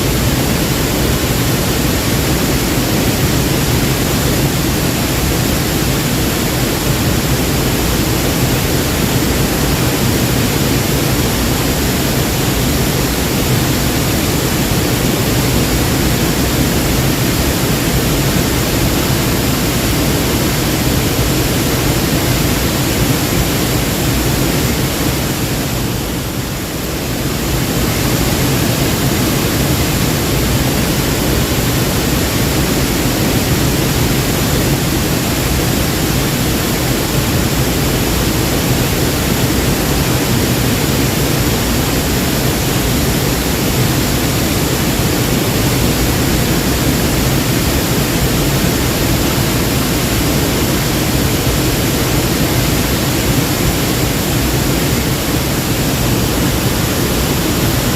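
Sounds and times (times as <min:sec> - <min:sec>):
waterfall rushing: 0:00.0 - 0:57.9.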